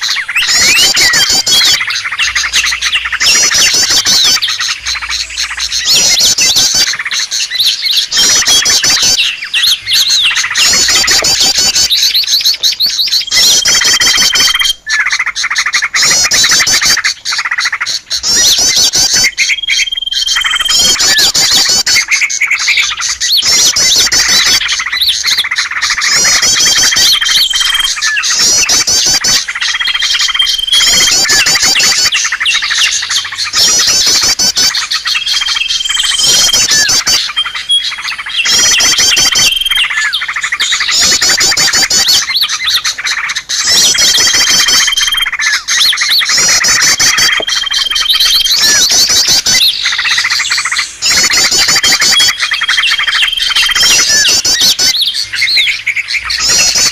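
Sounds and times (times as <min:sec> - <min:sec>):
songbirds twittering and trilling: 0:00.0 - 0:56.9.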